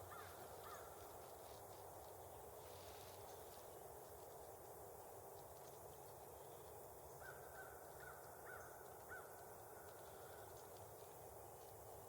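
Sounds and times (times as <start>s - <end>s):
distant bird calling: 0.0s - 1.0s.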